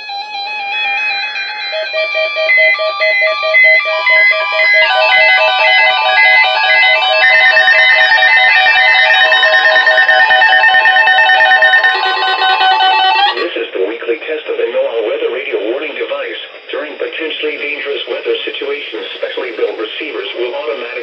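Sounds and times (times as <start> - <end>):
instrumental music with repeating notes: 0.0 - 13.4.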